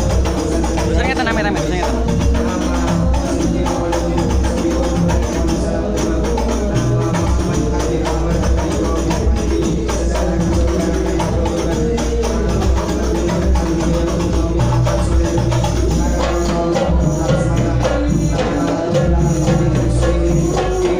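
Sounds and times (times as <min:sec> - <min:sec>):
hand drums: 0:00.0 - 0:20.9.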